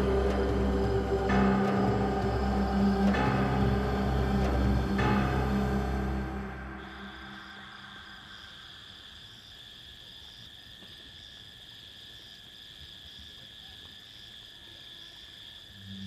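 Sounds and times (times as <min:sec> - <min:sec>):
higher pulsing insect note: 0:00.0 - 0:09.5
insects chirring: 0:00.0 - 0:16.0.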